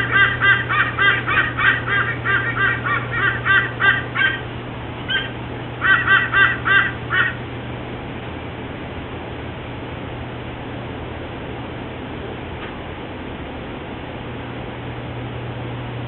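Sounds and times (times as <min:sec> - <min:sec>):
eagle calling: 0:00.0 - 0:07.4
low steady hum and hiss: 0:00.0 - 0:16.0.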